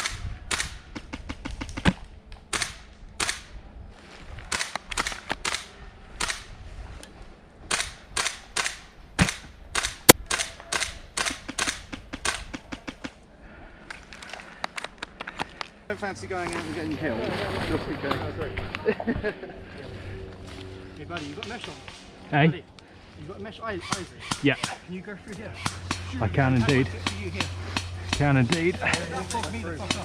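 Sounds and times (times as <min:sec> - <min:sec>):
airsoft guns firing: 0:07.7 - 0:13.0.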